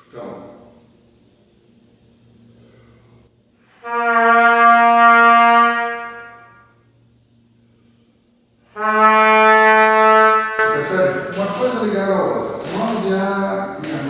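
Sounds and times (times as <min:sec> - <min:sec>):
trumpet long low tones: 0:02.9 - 0:13.8.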